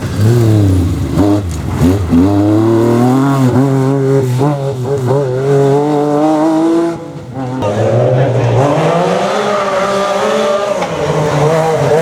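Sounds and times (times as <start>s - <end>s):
rally car engine revving hard: 0.0s - 12.0s.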